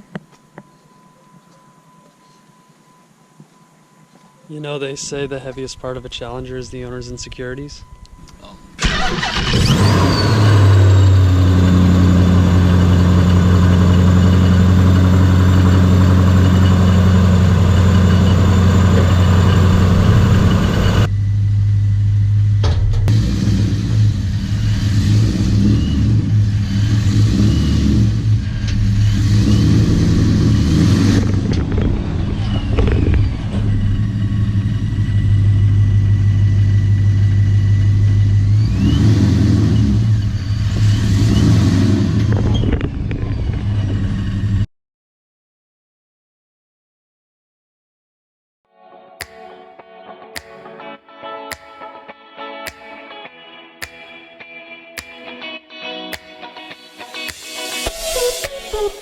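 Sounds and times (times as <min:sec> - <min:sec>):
faint rising whines: 0:00.0 - 0:22.7, 0:31.3 - 0:39.0
car engine revving while driving: 0:09.5 - 0:21.1, 0:23.1 - 0:31.8, 0:38.2 - 0:42.5
car engine idling: 0:10.4 - 0:22.6.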